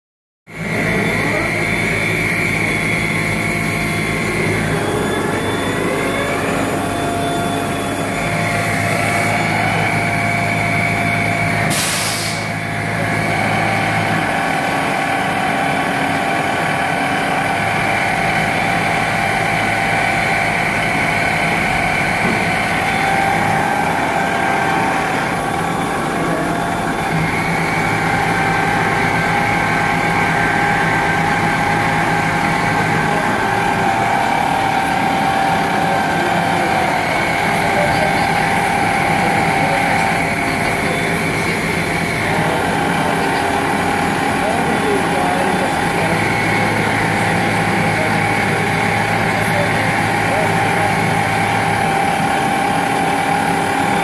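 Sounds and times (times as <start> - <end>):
machine tool whine: 0.5 - 54.0
short hiss: 11.7 - 12.5.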